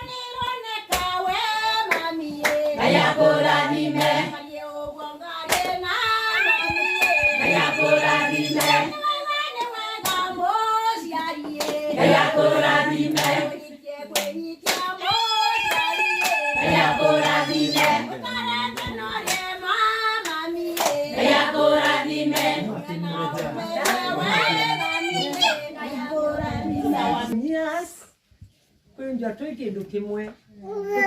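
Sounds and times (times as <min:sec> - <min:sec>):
group of voices singing: 0:00.8 - 0:27.4
hand-clapping: 0:00.9 - 0:01.2, 0:01.9 - 0:02.8, 0:04.0 - 0:04.2, 0:05.5 - 0:05.8, 0:09.6 - 0:10.3, 0:11.2 - 0:11.9, 0:13.1 - 0:13.5, 0:14.1 - 0:15.0, 0:15.6 - 0:18.1, 0:18.7 - 0:19.6, 0:20.2 - 0:21.1, 0:21.8 - 0:22.6, 0:23.4 - 0:24.1.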